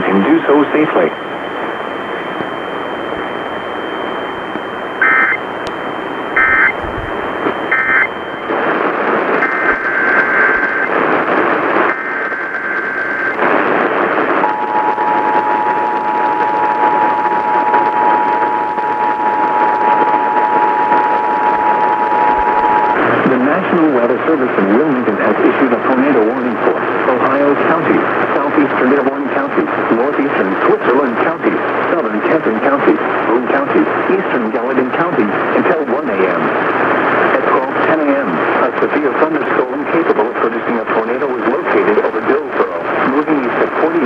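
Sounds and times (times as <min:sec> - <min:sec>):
data tone bursts: 0:00.0 - 0:23.3
radio static: 0:00.0 - 0:44.0
two-tone attention signal: 0:00.9 - 0:08.5, 0:14.4 - 0:23.2.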